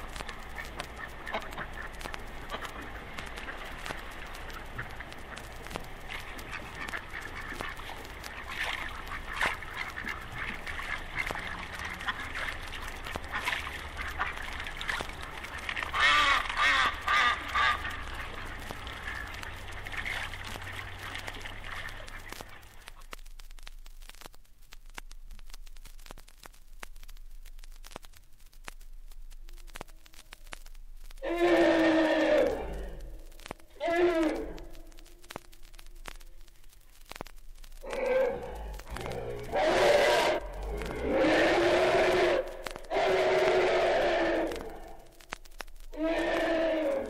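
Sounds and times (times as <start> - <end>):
faint record hiss: 0.0 - 47.0
ducks quacking: 0.4 - 22.6.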